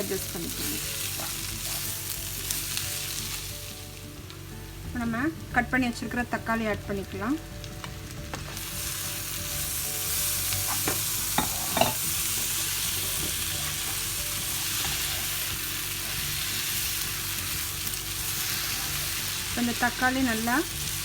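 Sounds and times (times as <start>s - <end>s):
vegetables sizzling in oil: 0.0s - 21.0s
spoon knocking against pan: 10.7s - 12.0s.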